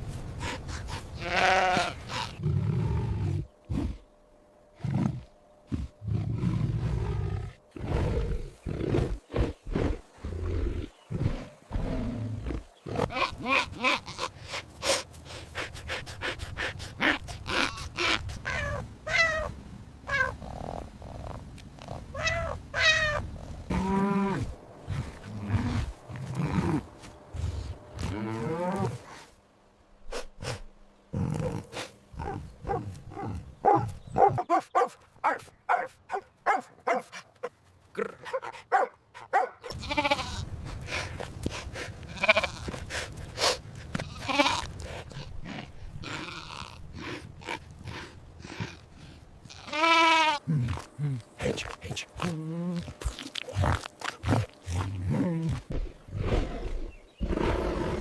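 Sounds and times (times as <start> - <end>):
animal bleating: 1.2 - 2.3, 39.7 - 40.5, 42.1 - 42.8, 44.0 - 44.8, 46.0 - 47.1, 49.4 - 50.9.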